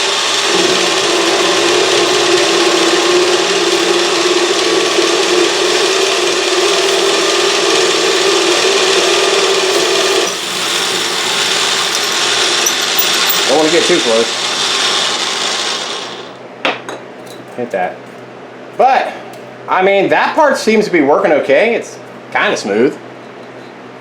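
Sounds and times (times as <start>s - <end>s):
hiss of cutting: 0.0s - 16.4s
lathe running: 0.0s - 16.4s.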